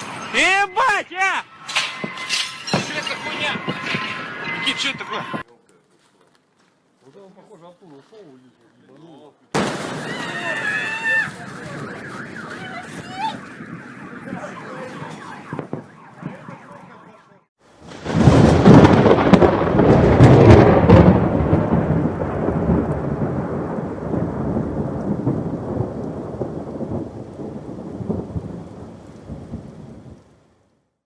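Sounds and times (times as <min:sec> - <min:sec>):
thunderclap rolling into rumble: 0:09.6 - 0:16.8, 0:17.8 - 0:30.5
rain hissing: 0:17.6 - 0:30.7.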